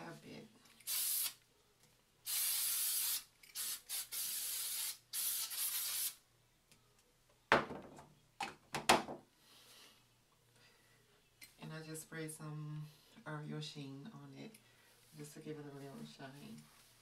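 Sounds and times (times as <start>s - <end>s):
spray can hissing bursts: 0.8s - 1.4s, 2.2s - 6.2s.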